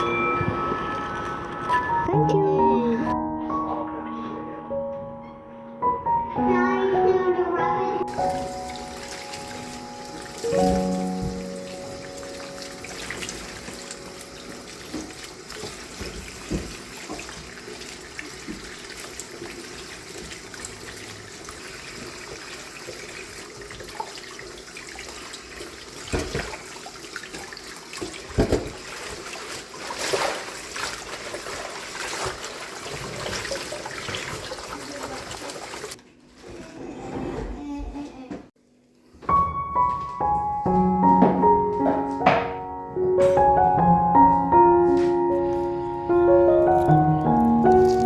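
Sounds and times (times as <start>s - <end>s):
tap water running into sink: 8.1s - 36.0s, 46.6s - 48.0s.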